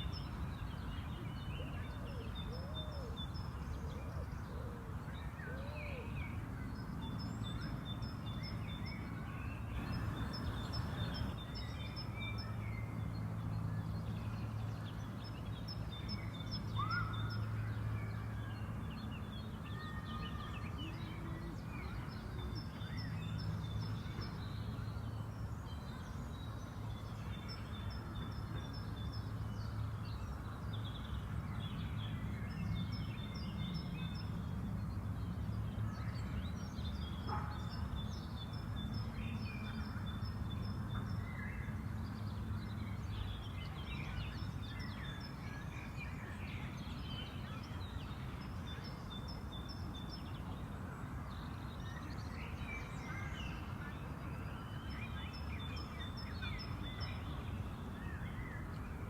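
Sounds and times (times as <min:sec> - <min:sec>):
low park background rumble: 0:08.6 - 0:59.0
birds singing and chirping: 0:09.7 - 0:12.6.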